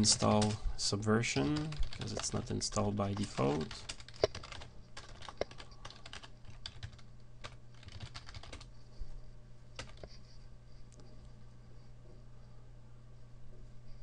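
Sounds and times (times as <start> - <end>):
faint low hum: 0.0 - 14.0
typing on a computer keyboard: 1.4 - 2.5, 3.1 - 8.7, 9.8 - 10.0.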